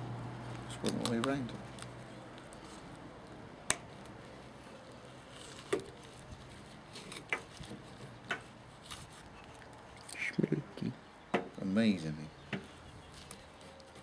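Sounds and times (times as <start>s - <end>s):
blade scoring coconut flesh: 3.7s - 4.1s.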